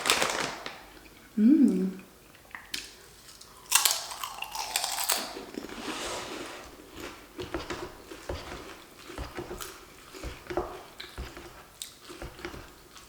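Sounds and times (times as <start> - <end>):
soft chewing: 1.0 - 13.0
small knocks: 7.4 - 12.8.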